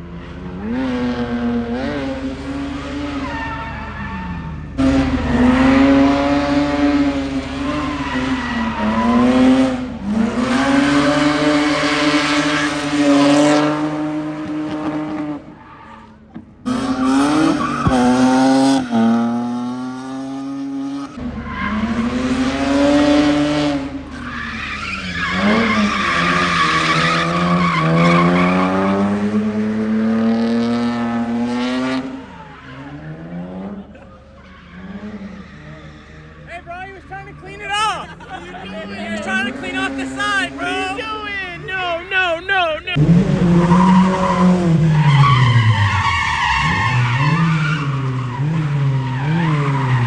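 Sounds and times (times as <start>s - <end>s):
car engine revving: 0.0s - 50.0s
tyres squealing: 24.2s - 29.0s, 43.7s - 50.0s.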